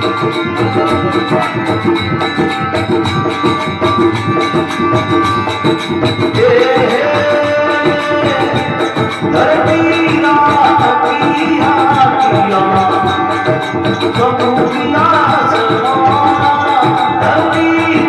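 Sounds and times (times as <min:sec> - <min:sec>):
hand drum: 0:00.0 - 0:18.0
melodic accompaniment: 0:00.0 - 0:18.0
person singing: 0:04.6 - 0:18.0.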